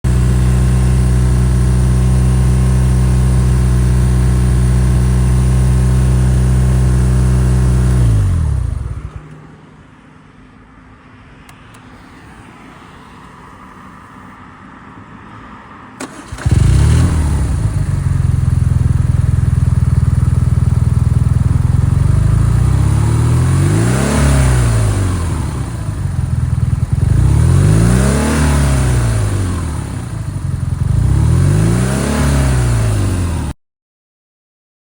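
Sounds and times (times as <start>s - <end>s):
motorcycle engine idling and revving: 0.0s - 10.2s, 16.0s - 33.6s.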